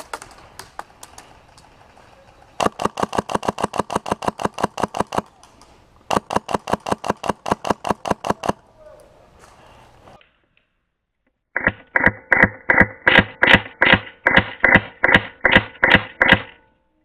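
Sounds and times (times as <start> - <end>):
airsoft rifle full-auto bursts: 2.6 - 5.3, 6.1 - 8.6, 11.6 - 16.6.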